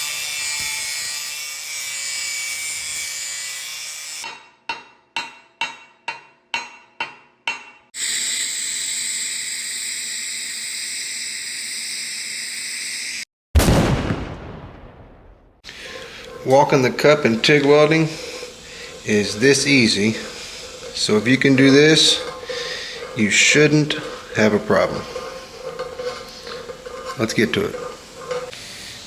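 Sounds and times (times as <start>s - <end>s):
loud boom impact: 13.6s - 15.6s
welding arc hissing: 15.7s - 29.0s.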